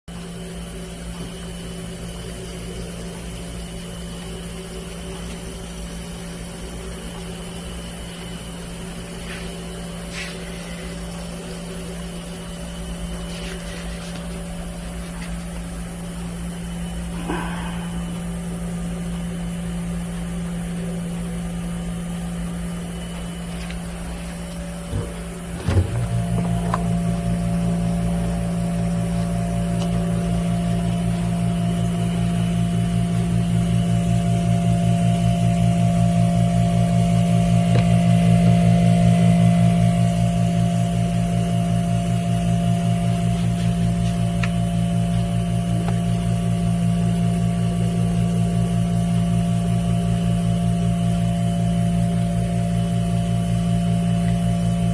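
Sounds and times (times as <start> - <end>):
appliance motor humming: 0.1 - 54.9
deeper hum: 8.0 - 47.4.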